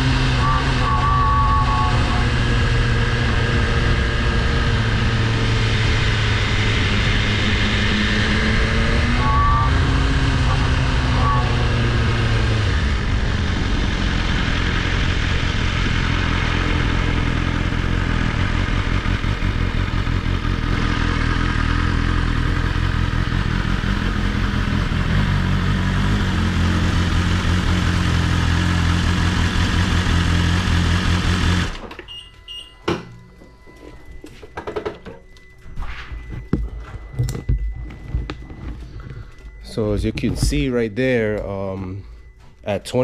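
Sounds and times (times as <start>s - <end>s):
motorcycle engine running: 0.0s - 31.8s
steady buzz: 0.0s - 31.9s.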